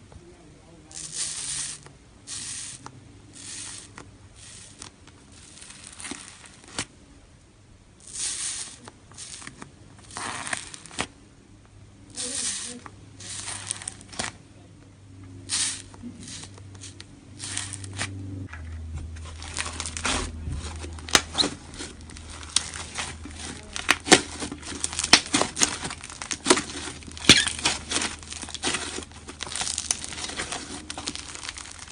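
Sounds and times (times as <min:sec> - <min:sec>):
slime crust crackling and snapping: 0:01.0 - 0:06.9, 0:08.0 - 0:11.2, 0:19.2 - 0:31.9.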